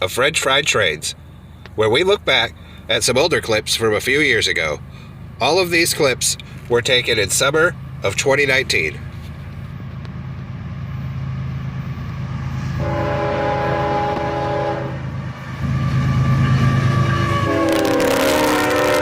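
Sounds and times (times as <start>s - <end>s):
diesel locomotive engine rumble: 0.0s - 19.0s
train horn blast: 12.8s - 15.1s, 15.7s - 19.0s.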